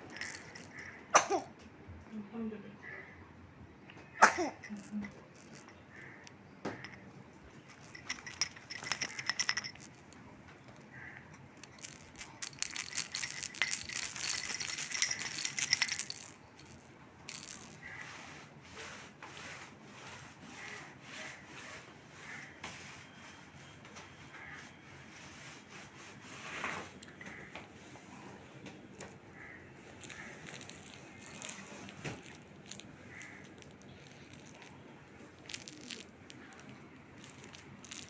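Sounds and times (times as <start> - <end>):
rattle toy shaking: 0.0 - 1.0, 4.2 - 10.2, 11.0 - 18.1, 29.9 - 38.0.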